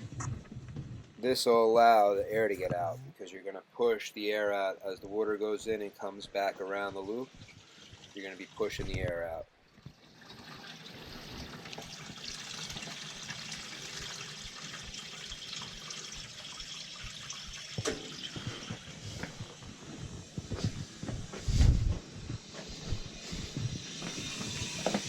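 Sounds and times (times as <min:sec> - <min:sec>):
pressurized water rushing through hose: 0:10.8 - 0:25.0.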